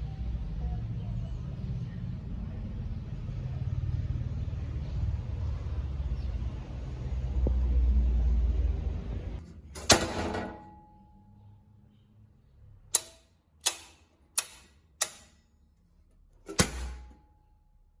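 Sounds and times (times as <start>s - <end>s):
sharp clicks: 12.9s - 15.4s
sharp knock with ringing tone: 16.5s - 17.2s.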